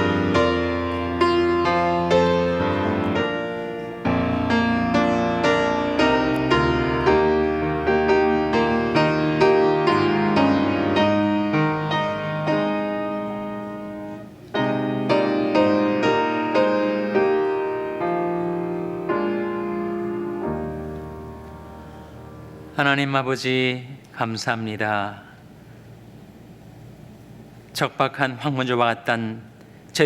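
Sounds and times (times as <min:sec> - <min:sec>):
slow gentle piano melody: 0:00.0 - 0:23.4.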